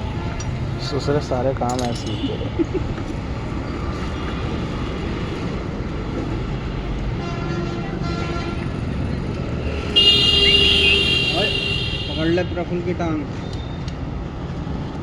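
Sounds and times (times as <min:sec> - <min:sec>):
road traffic rumble: 0:00.0 - 0:15.0
faint vehicle horn: 0:09.8 - 0:12.6.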